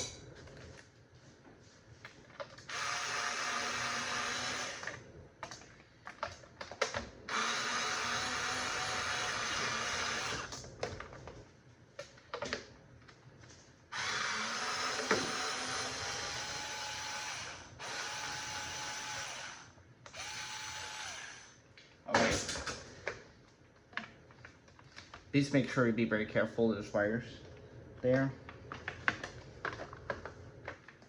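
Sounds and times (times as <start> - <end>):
drill-driver running: 2.7 - 5.0, 7.3 - 10.5, 13.9 - 21.6.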